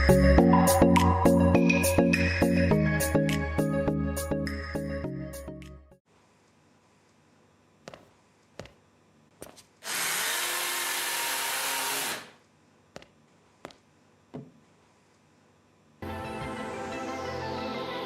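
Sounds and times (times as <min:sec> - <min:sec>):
vacuum cleaner motor: 0:09.8 - 0:12.3.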